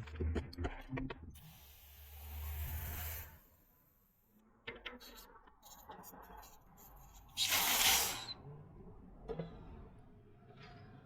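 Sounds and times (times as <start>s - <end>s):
air hissing out: 7.4s - 8.3s.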